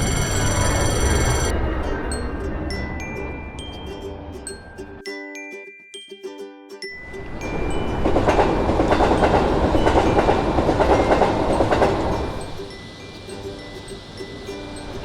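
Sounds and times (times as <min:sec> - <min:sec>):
crossing warning bell: 0:00.0 - 0:04.7, 0:07.0 - 0:15.0
train wheels rumbling and clattering: 0:07.5 - 0:12.9.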